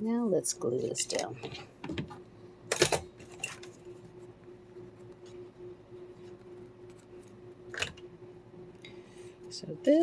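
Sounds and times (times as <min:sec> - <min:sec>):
faint hum: 0:00.0 - 0:10.0.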